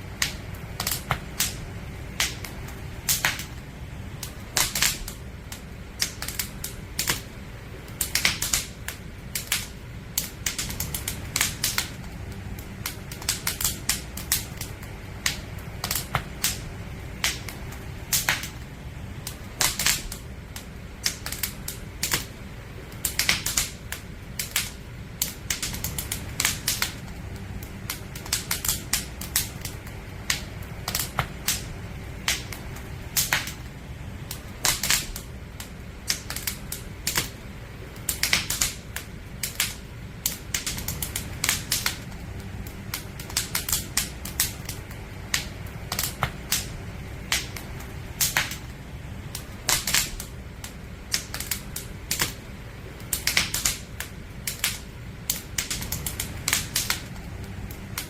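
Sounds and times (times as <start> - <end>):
campfire crackling and popping: 0.0 - 58.0
low rumble of flames: 0.0 - 58.0.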